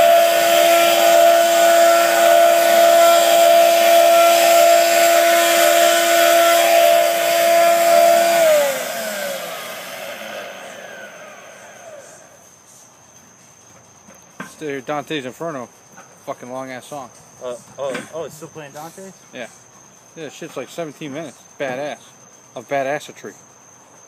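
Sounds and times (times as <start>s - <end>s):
electric motor humming: 0.0s - 12.4s.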